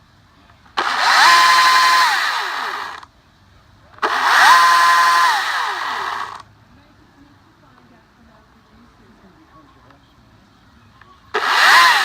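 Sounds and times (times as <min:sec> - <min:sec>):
electric chainsaw motor whining: 0:00.8 - 0:03.0, 0:04.0 - 0:06.4, 0:11.4 - 0:12.0.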